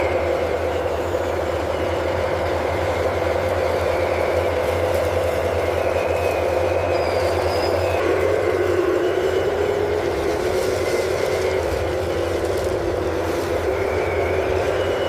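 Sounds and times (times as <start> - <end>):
faint whine: 0.0 - 15.0
model machines engine-like hum: 0.0 - 15.0.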